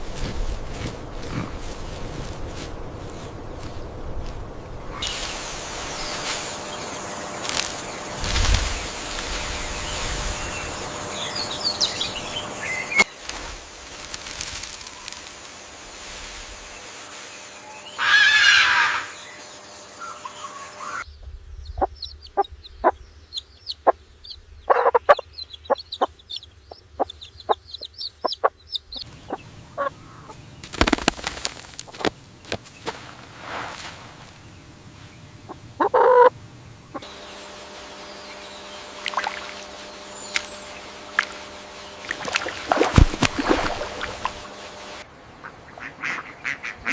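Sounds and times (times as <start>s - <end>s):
chickens clucking: 24.7s - 31.1s, 35.4s - 46.9s.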